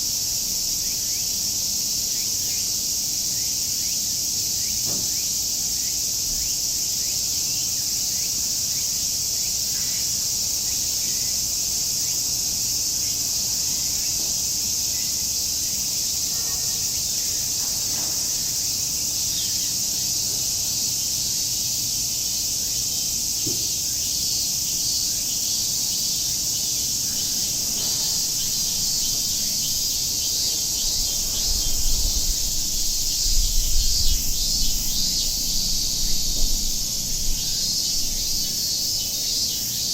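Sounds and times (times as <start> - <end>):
cicadas buzzing: 0.0 - 39.9
low thumping rumble: 27.2 - 38.5.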